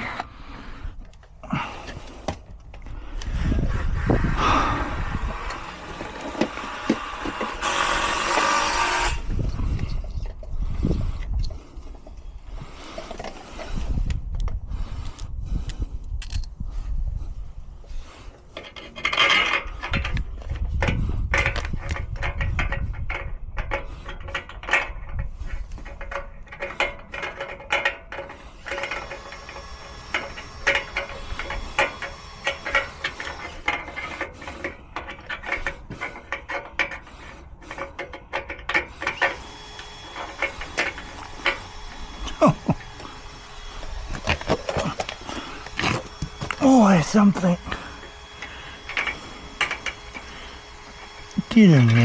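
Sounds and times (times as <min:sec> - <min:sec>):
steady hum: 0:25.3 - 0:52.0.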